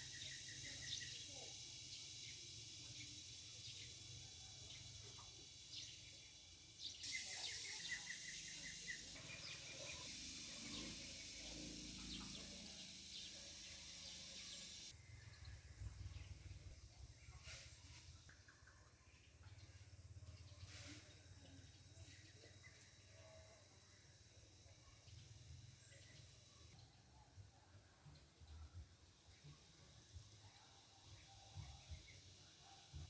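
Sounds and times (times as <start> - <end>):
steady high-pitched buzz: 0.0 - 14.9.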